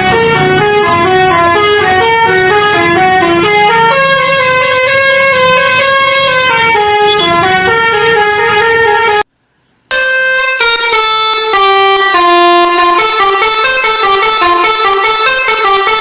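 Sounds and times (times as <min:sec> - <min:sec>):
musical air horn melody: 0:00.0 - 0:09.3, 0:09.9 - 0:16.0.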